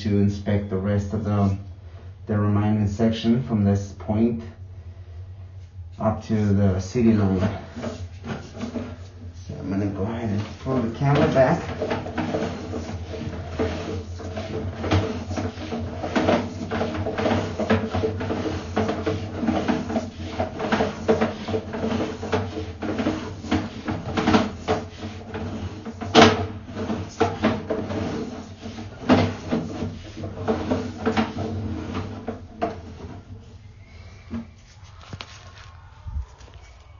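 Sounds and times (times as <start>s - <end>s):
steady low hum: 0.0s - 36.9s
cable knocking and rattling: 7.3s - 33.6s.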